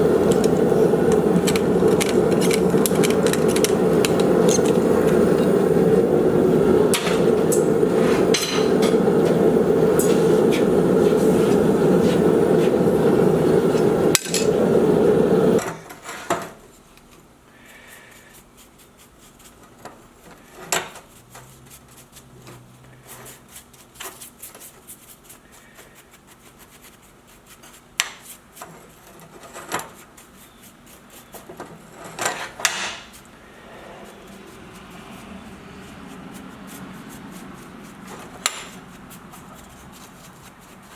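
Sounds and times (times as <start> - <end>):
hand tools tapping metal: 0.0 - 5.8, 6.8 - 10.7, 13.7 - 15.9, 38.1 - 38.8
gas forge burner roaring: 0.0 - 16.6, 31.3 - 40.9.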